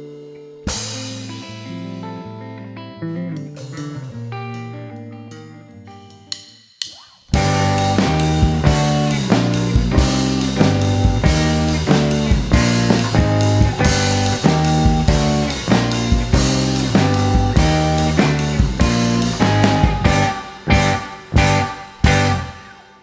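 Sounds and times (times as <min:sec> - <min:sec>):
guitar chords: 0:00.0 - 0:06.3, 0:07.4 - 0:23.0
drums on a steady beat: 0:00.7 - 0:01.6, 0:06.3 - 0:22.9.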